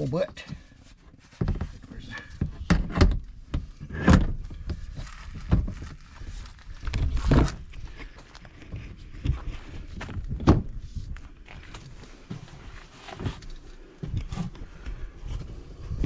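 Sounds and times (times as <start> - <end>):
thumps and clunks of handled parts: 0.1 - 15.5.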